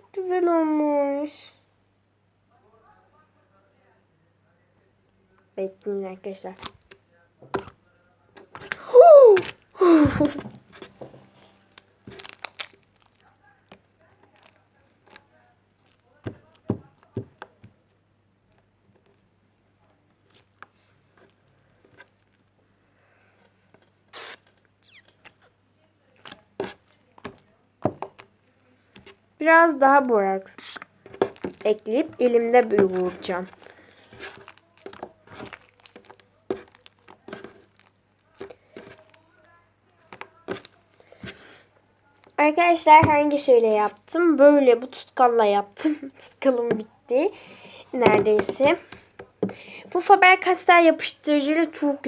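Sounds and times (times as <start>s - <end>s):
slime squelching: 5.6s - 52.0s
slime clicks and squishes: 11.8s - 15.2s, 32.8s - 40.8s.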